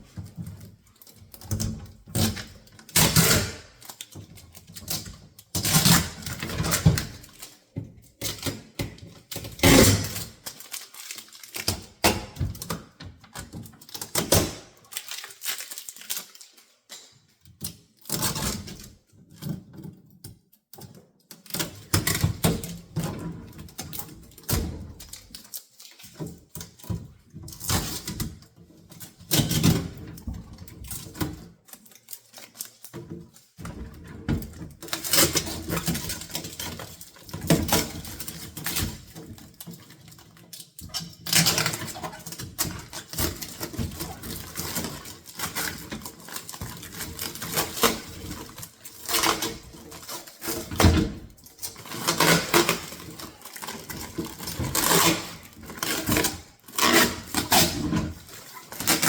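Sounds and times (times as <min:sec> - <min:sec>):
rustling packaging: 0:00.0 - 0:19.9, 0:23.5 - 0:29.6, 0:30.5 - 0:59.0.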